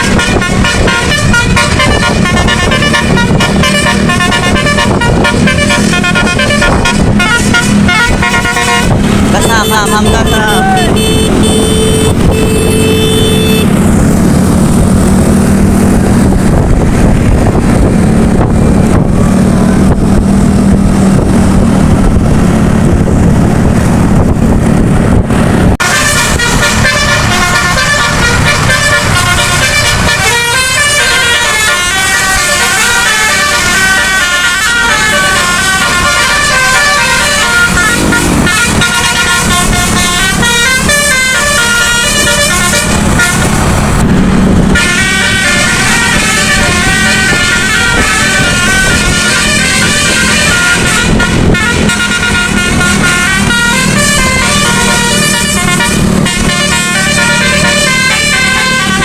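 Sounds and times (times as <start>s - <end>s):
musical air horn tune: 0.0s - 13.8s, 25.8s - 44.1s, 44.7s - 59.0s
bus engine droning: 0.0s - 59.0s.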